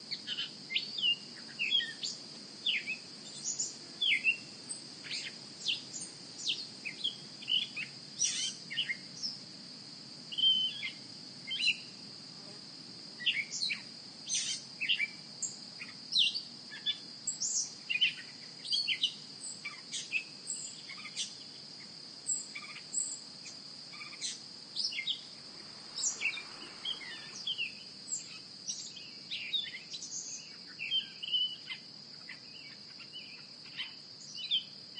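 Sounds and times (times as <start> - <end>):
small birds chirping: 0.1 - 9.4, 10.3 - 12.0, 13.2 - 34.8
high-pitched insect drone: 13.2 - 34.4.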